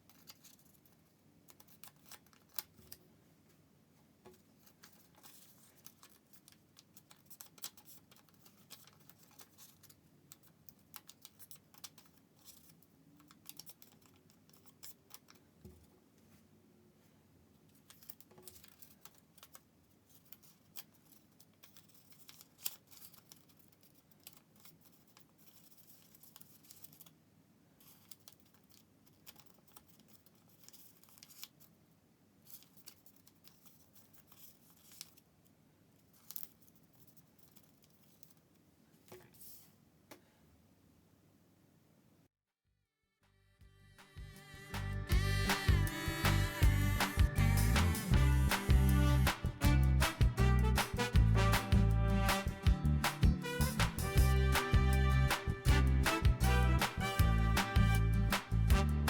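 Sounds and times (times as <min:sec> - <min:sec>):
paper rustling and crinkling: 0:04.3 - 0:15.4, 0:17.7 - 0:27.2, 0:27.8 - 0:31.7, 0:32.4 - 0:35.3.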